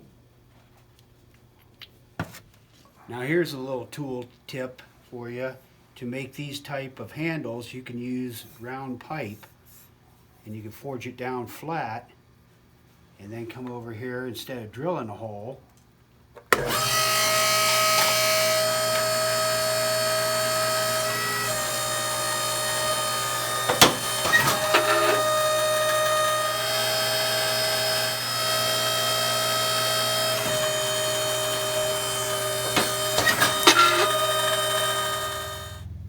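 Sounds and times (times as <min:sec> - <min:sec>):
hydraulic punch press whining hum: 0:16.5 - 0:36.0.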